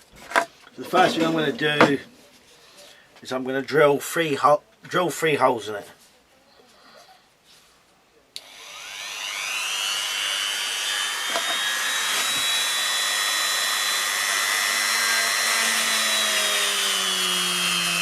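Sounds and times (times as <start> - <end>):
electric drill drilling plastic: 8.4 - 18.0.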